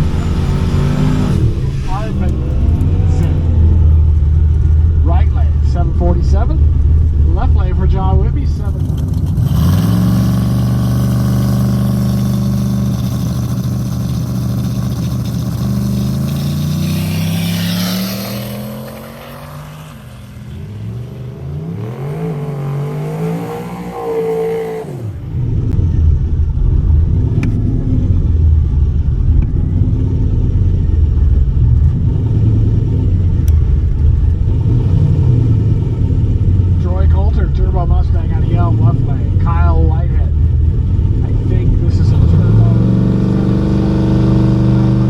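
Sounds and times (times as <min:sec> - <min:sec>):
engine idling unevenly: 0:00.0 - 0:09.5, 0:35.4 - 0:43.2
race car engines accelerating: 0:00.0 - 0:45.0.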